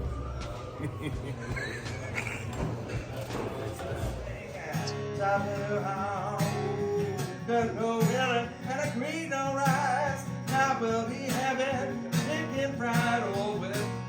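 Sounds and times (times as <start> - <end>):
low outdoor rumble: 0.0 - 5.9
country music with acoustic guitar: 1.6 - 14.0.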